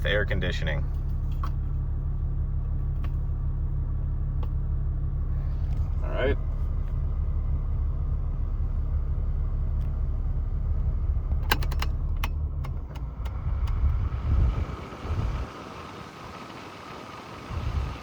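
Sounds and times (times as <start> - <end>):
car engine idling: 0.0 - 18.0
air conditioning blower hiss: 13.5 - 18.0.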